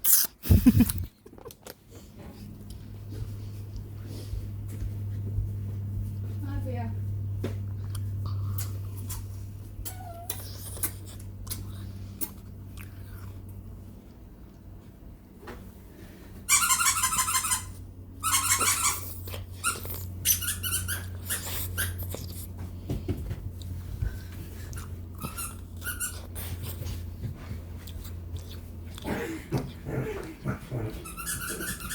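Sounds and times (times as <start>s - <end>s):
steady low hum: 0.2s - 16.6s, 17.5s - 31.9s
dog squealing and whining: 16.5s - 22.1s, 24.8s - 26.5s, 31.0s - 31.9s.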